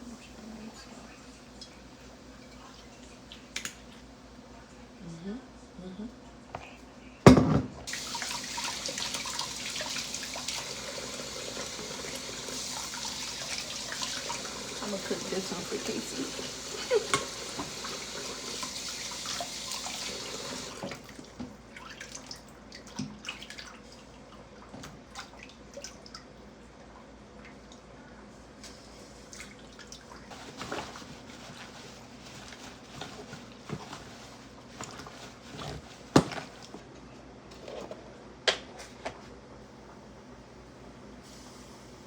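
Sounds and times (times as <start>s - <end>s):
tap water running: 7.9s - 22.2s.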